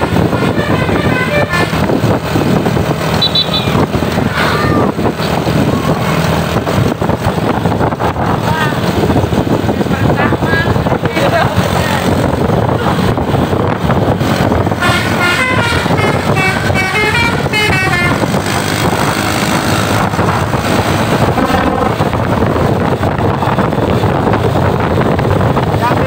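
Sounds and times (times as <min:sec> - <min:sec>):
vehicle noise: 0:00.0 - 0:26.0
multi-tone air horn tune: 0:00.3 - 0:01.9, 0:03.2 - 0:03.8, 0:14.8 - 0:18.3
short air horn blast: 0:00.4 - 0:01.8, 0:14.8 - 0:18.2.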